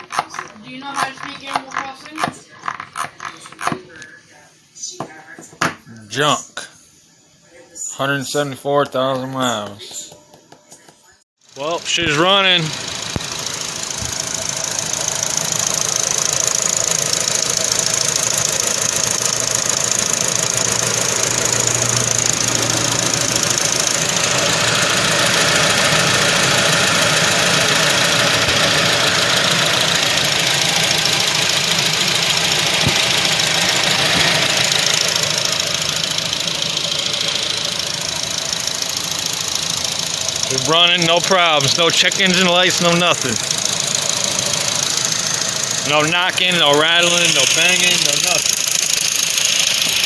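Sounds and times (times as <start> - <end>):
car engine idling: 11.4 - 50.0.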